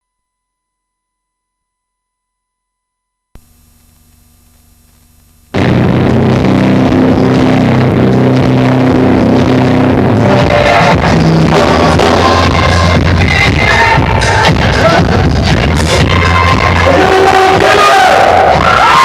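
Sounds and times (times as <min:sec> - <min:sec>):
faint amplifier hum: 0:03.1 - 0:11.8
distorted live rock band: 0:05.5 - 0:19.0.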